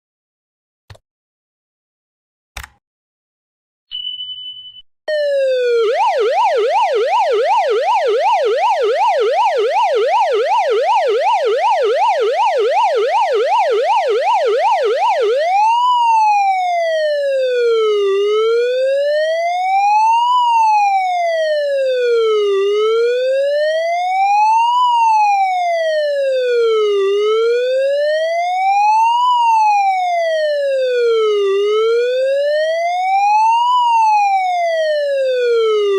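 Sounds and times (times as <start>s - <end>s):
short high beep: 3.9s - 4.8s
police siren yelp and wail: 5.1s - 35.9s.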